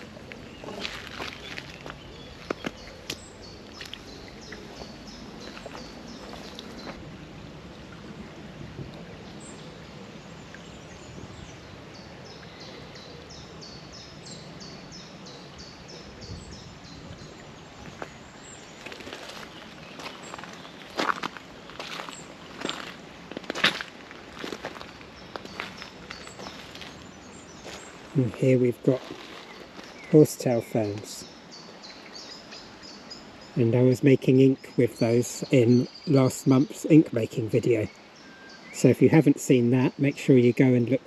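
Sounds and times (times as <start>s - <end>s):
songbird singing high notes: 27.5s - 41.0s.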